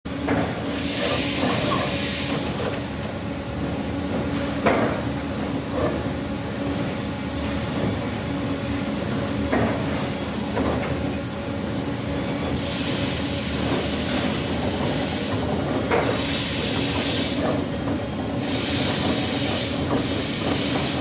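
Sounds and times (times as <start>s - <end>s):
air hissing: 12.6s - 17.7s, 18.4s - 21.0s.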